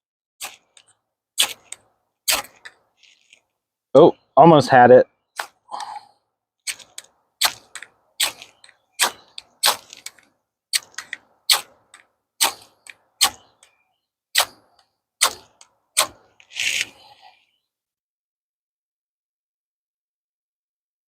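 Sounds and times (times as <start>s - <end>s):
knife scraping a ferro rod: 0.4s - 3.4s, 16.4s - 17.4s.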